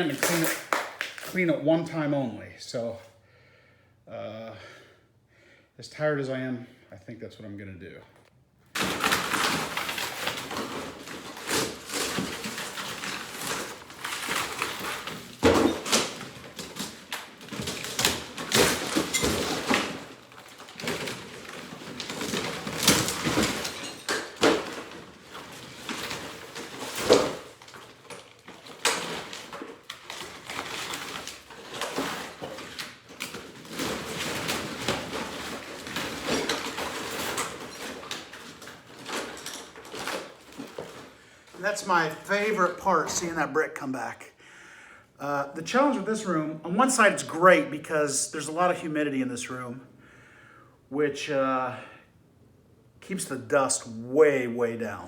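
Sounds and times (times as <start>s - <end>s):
falling debris crashing: 0.0s - 1.4s, 8.7s - 43.6s
wall material being torn off: 0.0s - 1.4s, 8.7s - 43.5s
scraping and cracking: 0.0s - 1.5s, 8.7s - 43.8s.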